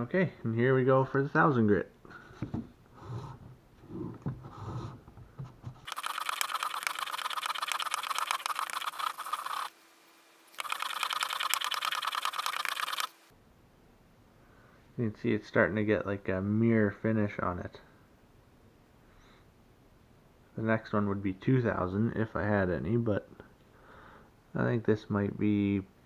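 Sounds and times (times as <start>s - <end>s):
chisel scratching on sandpaper: 5.8s - 9.8s, 10.6s - 13.2s.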